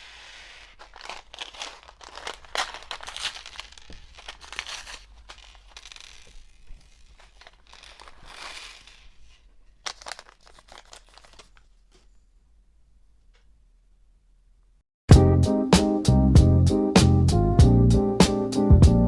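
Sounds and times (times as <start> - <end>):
plastic bag crinkling: 0.0 - 11.7.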